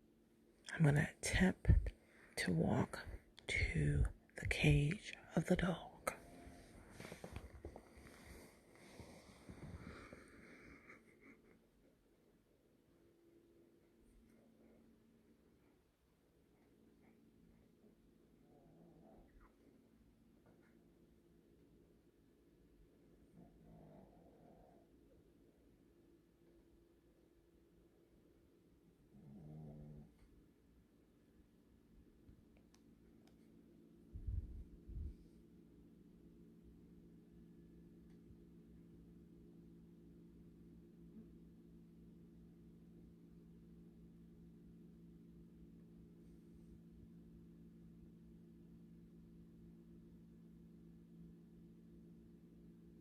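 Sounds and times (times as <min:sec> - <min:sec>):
faint low hum: 0:00.0 - 0:53.0
dog snoring: 0:23.3 - 0:24.9, 0:29.1 - 0:30.2.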